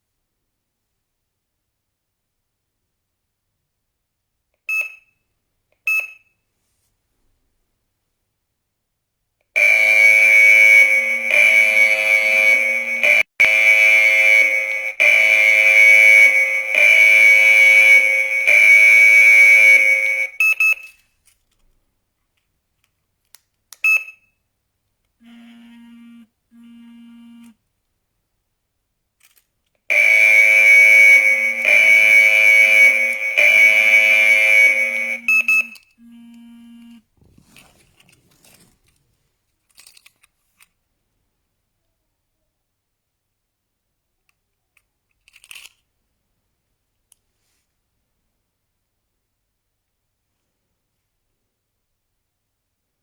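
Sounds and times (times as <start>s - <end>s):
alarm siren high-pitched tone: 9.6s - 20.4s, 29.9s - 37.0s
faint low buzz: 25.2s - 27.6s, 31.2s - 37.1s.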